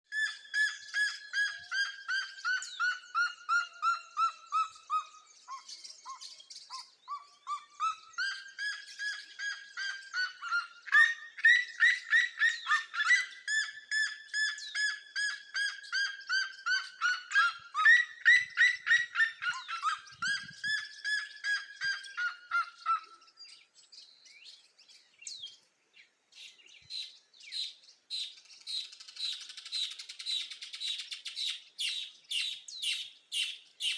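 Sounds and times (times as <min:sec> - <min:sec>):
birds singing: 0:00.1 - 0:33.9
high bird chirps: 0:26.4 - 0:33.9.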